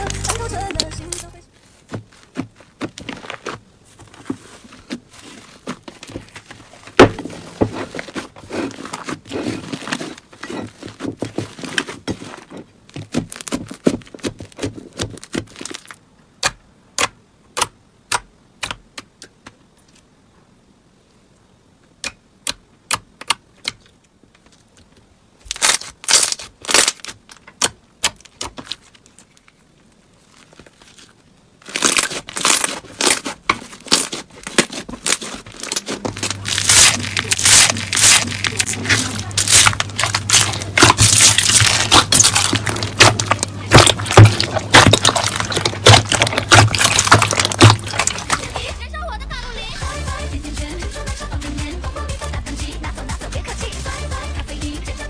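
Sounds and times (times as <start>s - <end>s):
slime crackling and popping: 13.0s - 17.7s, 25.5s - 29.3s, 30.3s - 48.7s.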